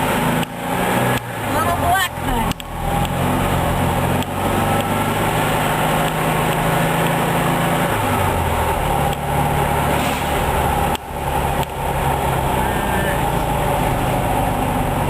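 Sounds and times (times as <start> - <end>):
car engine running while driving: 0.0 - 15.0.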